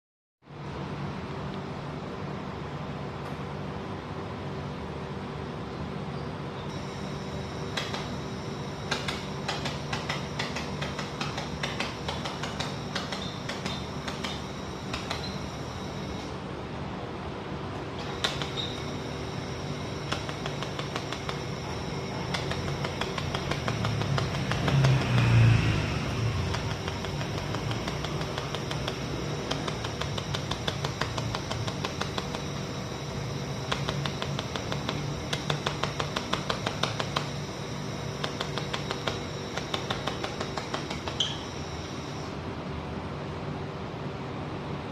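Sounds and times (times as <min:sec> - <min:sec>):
machine hum: 0:00.4 - 0:44.9
laser welder rapid clicks: 0:07.6 - 0:16.3, 0:18.0 - 0:42.1.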